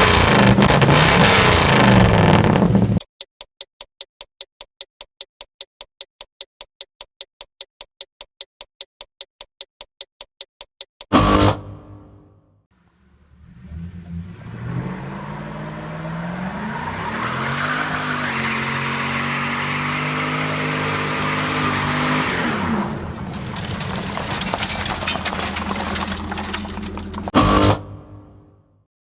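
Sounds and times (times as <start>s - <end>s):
car engine revving: 0.0s - 3.0s, 13.2s - 28.4s
crackling noise: 23.1s - 27.7s.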